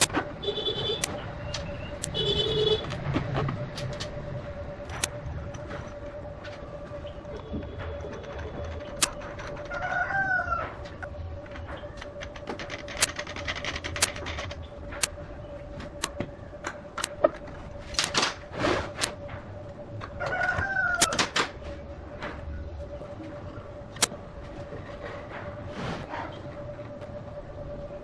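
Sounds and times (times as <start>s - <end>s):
faint hum: 0.0s - 28.0s
sharp clicks and knocks: 7.3s - 9.9s, 10.7s - 15.2s, 15.8s - 19.4s
rooster crowing: 9.6s - 11.0s, 20.2s - 21.4s.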